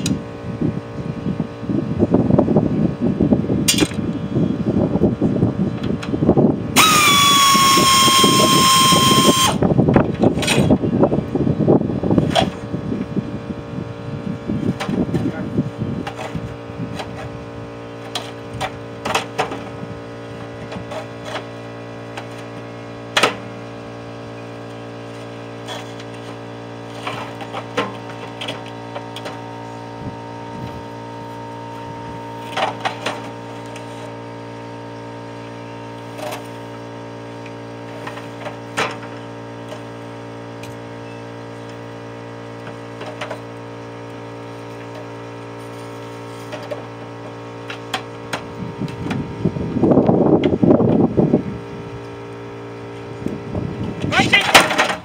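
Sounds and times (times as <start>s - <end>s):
steady hum: 0.0s - 55.0s.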